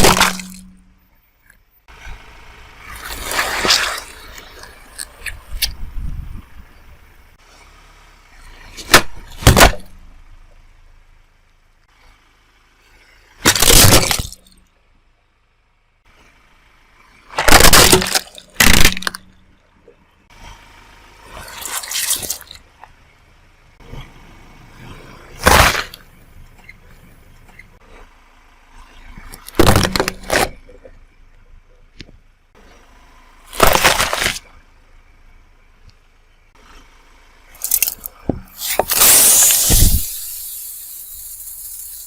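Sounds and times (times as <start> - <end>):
car wheel crushing objects: 0.0 - 1.1, 2.8 - 5.7, 8.6 - 10.2, 13.4 - 14.6, 17.2 - 19.6, 25.3 - 26.8, 29.0 - 30.7, 33.4 - 34.6, 37.5 - 42.0.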